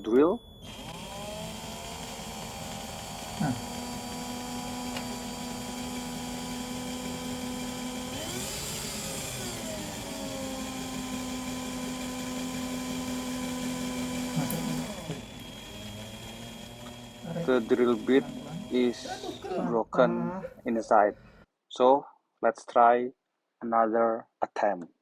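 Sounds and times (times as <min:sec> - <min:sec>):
electric drill whining: 0:00.0 - 0:19.8.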